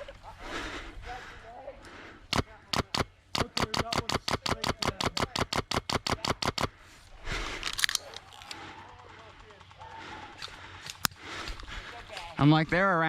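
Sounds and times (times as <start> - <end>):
airsoft gun firing: 2.3 - 6.7
rustling with sharp clicks: 2.3 - 6.8.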